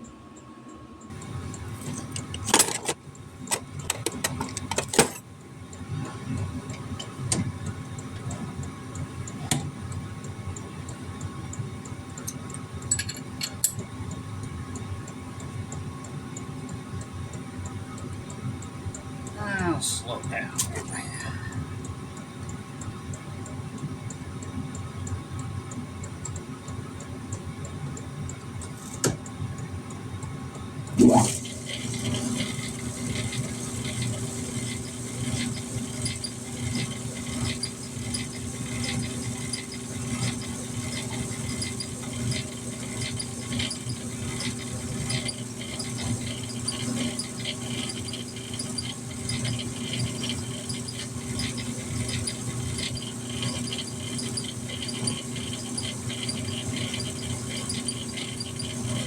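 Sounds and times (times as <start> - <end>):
drill bit cutting metal: 31.0 - 59.0
metal lathe running: 31.0 - 59.0
fast even ticking: 32.5 - 59.0.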